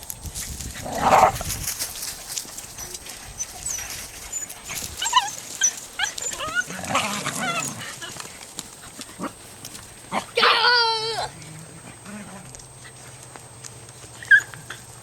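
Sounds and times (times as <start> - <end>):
puppies whining and yelping: 2.7 - 8.3, 14.1 - 15.0.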